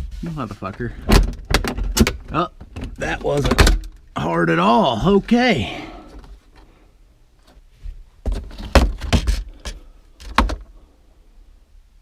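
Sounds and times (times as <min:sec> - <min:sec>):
parts knocking and clattering: 0:00.7 - 0:04.1, 0:08.2 - 0:10.8.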